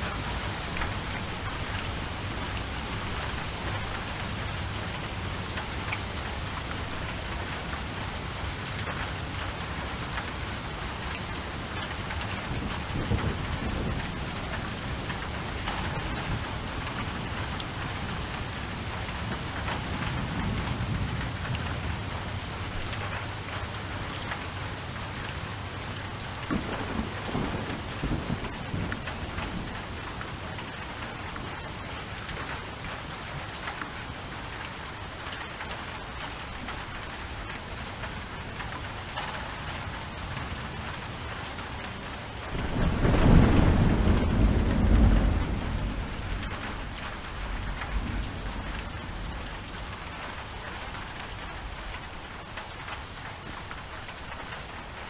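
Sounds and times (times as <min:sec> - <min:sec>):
heavy rain: 0:00.0 - 0:55.0
thunder rolling: 0:26.4 - 0:30.0, 0:42.5 - 0:50.0.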